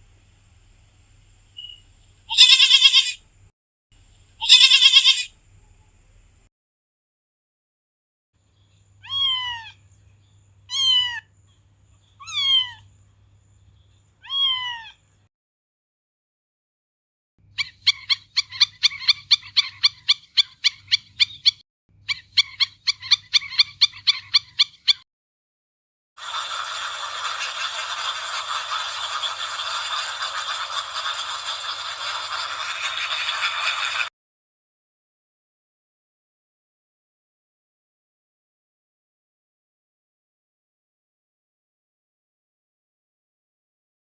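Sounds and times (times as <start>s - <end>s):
small bird chirping rapidly: 1.6s - 3.2s, 4.4s - 5.3s, 8.6s - 15.0s, 17.5s - 25.0s
cat meowing: 2.3s - 3.2s, 4.4s - 5.3s, 9.0s - 9.8s, 10.7s - 11.3s, 12.2s - 12.9s, 14.2s - 15.0s
noisy rasping sound: 26.2s - 34.1s.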